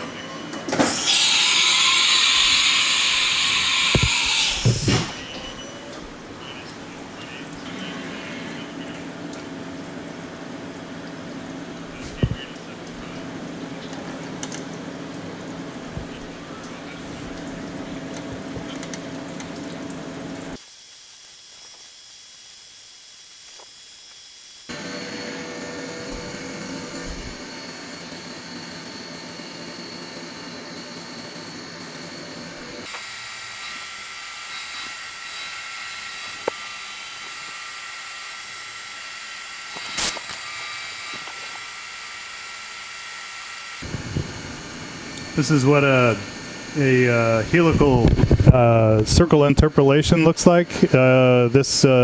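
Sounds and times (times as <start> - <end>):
milling machine hum: 0.0 - 20.6, 24.0 - 52.0
faint high whine: 29.7 - 52.0
loud steady hiss: 32.8 - 52.0.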